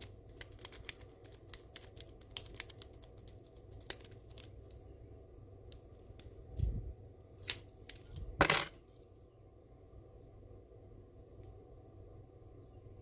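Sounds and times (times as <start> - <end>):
rake pick clicking over lock pins: 0.0 - 4.8.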